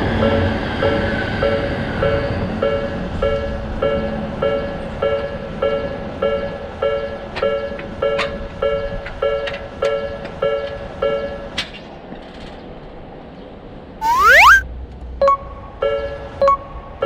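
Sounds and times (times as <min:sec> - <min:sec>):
cartoon rising whistle glide: 0:14.0 - 0:14.6.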